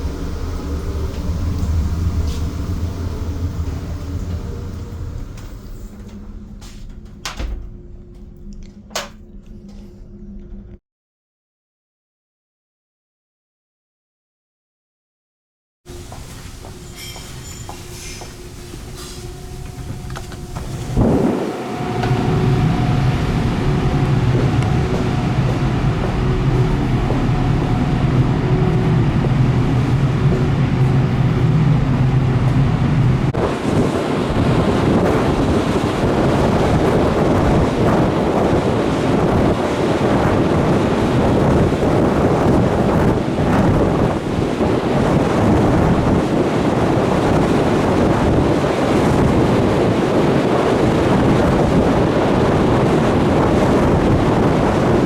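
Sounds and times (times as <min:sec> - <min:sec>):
ship engine drone: 0:00.0 - 0:10.8, 0:15.9 - 0:55.0
faint pitched whine: 0:16.9 - 0:32.3
wind buffeting microphone: 0:17.8 - 0:55.0
sea rushing: 0:18.4 - 0:55.0.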